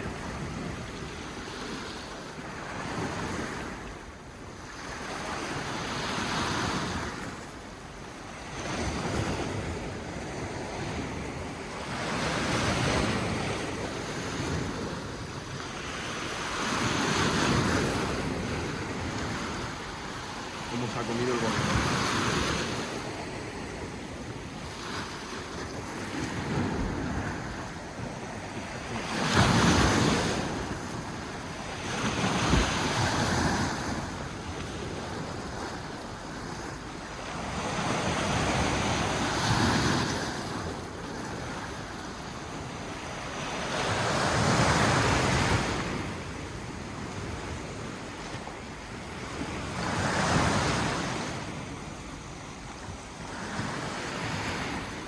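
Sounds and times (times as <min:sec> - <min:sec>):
waves breaking on rocky shore: 0:08.2 - 0:51.8.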